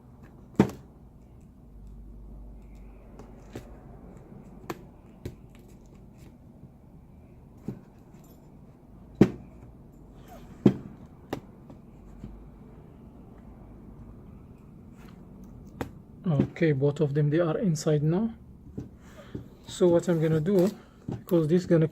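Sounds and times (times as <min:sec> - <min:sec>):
low steady hum: 0:00.0 - 0:21.9
hand tools tapping laptop parts: 0:00.2 - 0:06.4, 0:10.4 - 0:12.4, 0:15.0 - 0:16.6.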